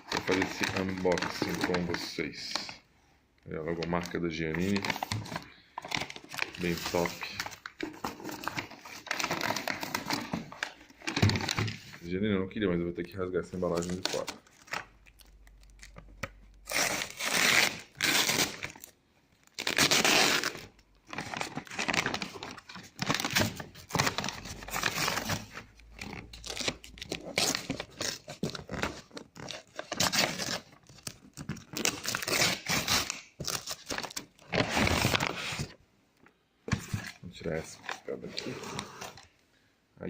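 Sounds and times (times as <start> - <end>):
packaging ripping and crinkling: 3.8 - 11.9, 13.7 - 35.7.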